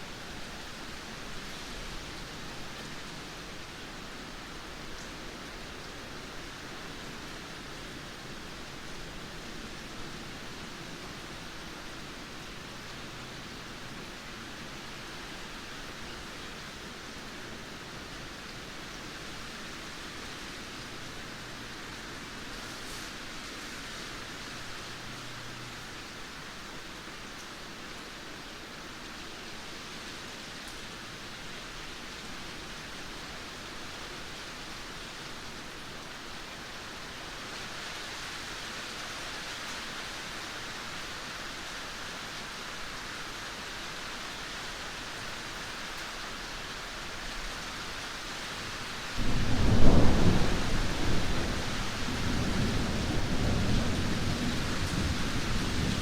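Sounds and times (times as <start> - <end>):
heavy rain falling: 0.0 - 56.0
thunder clap and rumble: 49.2 - 56.0.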